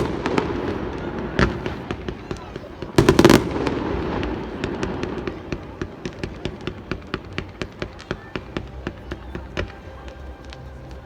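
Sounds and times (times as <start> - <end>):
fireworks bangs echoing: 0.0 - 10.5
fireworks crackling pops: 0.0 - 11.0.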